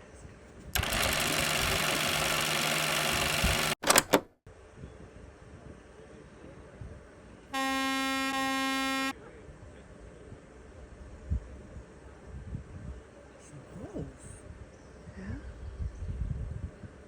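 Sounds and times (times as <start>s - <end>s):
sharp clicks: 0.8s - 4.4s
car horn honk: 7.6s - 9.1s.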